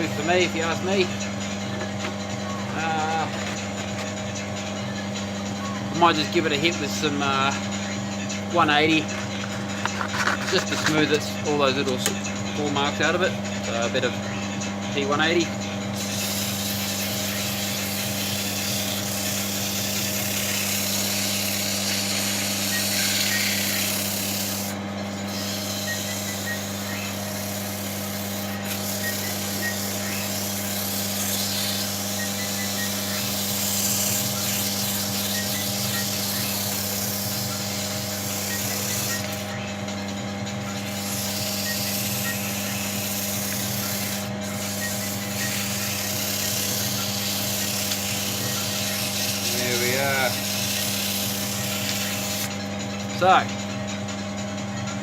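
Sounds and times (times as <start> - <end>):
lathe motor humming: 0.0 - 55.0
sandpaper sanding wood: 9.2 - 11.1, 16.0 - 39.6, 40.8 - 52.5.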